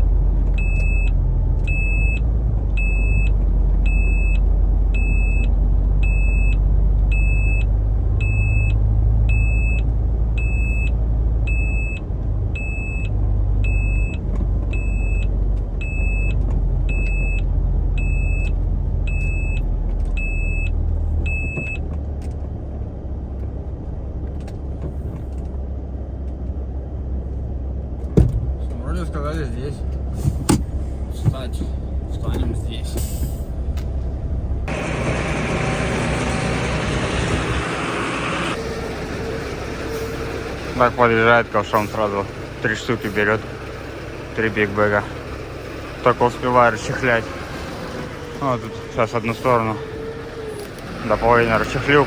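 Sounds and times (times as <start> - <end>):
truck reversing alarm beeping: 0.0 - 21.8, 34.7 - 52.0
diesel engine running: 0.0 - 52.0.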